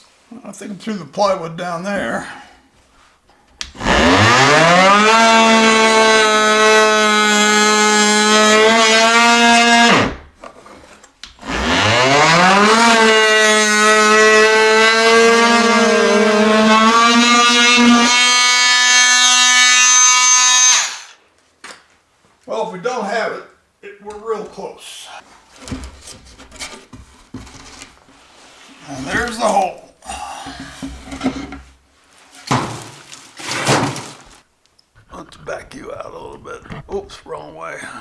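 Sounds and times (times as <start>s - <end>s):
power tool whining: 3.6s - 10.2s, 11.4s - 21.2s.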